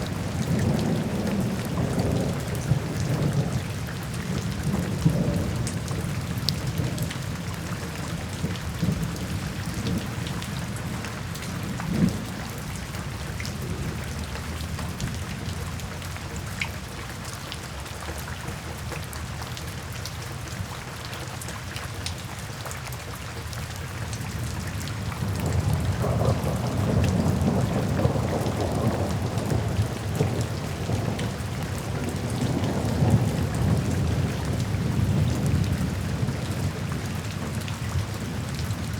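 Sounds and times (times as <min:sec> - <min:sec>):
thunder rumbling: 0:00.0 - 0:15.9, 0:25.2 - 0:38.9
rain falling: 0:00.0 - 0:38.9
raindrops ticking: 0:00.0 - 0:38.9.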